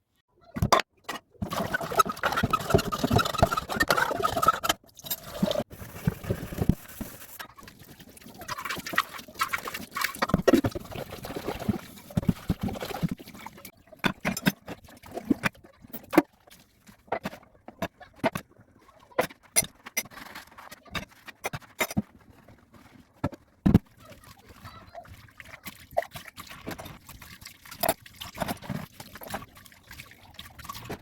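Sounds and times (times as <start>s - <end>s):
water running and splashing: 1.4s - 17.1s, 23.9s - 31.0s
pots and utensils clattering: 8.5s - 16.2s.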